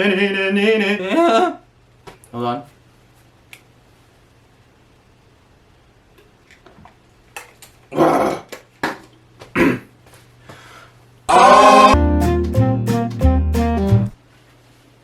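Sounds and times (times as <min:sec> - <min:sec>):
loud voiced cry: 0:11.3 - 0:12.0
short throaty vocal sounds: 0:11.3 - 0:12.0
plucked-string music with bass: 0:12.0 - 0:14.2.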